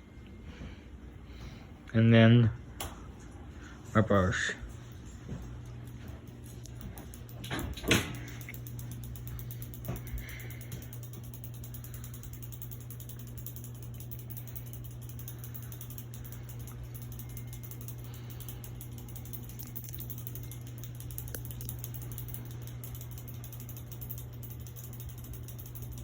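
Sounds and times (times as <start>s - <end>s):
ceiling fan motor hum: 0.0s - 26.0s
rapid even clicking: 6.6s - 26.0s.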